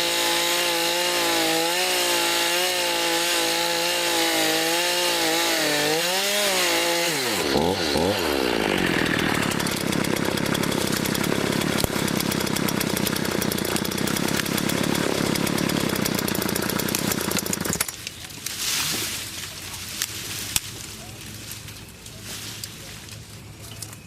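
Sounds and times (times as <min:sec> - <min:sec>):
chainsaw revving: 0:00.0 - 0:17.9.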